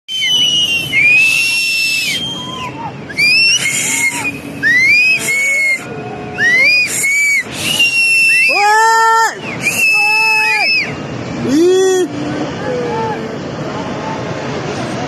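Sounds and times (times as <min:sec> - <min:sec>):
people whistling and screaming: 0:00.1 - 0:11.0
steady rushing noise: 0:00.1 - 0:15.0.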